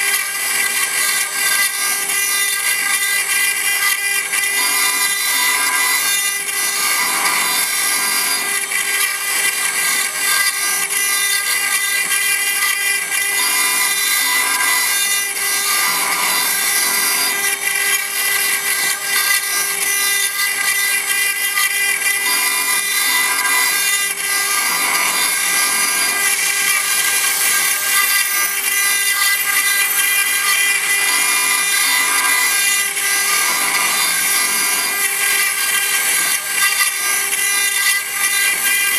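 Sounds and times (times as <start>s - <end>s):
cutter grinding stone: 0.0s - 38.9s.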